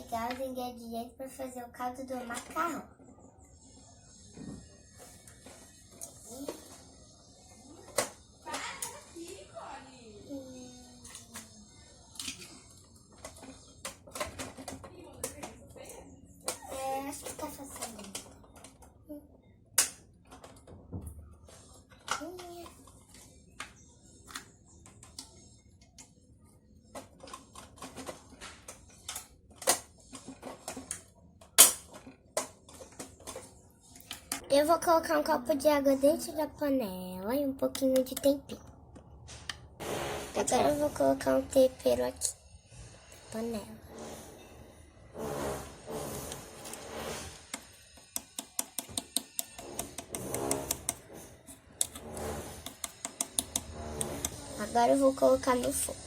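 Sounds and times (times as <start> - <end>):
music: 39.8 - 56.0
toy pieces clicking and tapping: 47.5 - 51.0, 52.6 - 54.4.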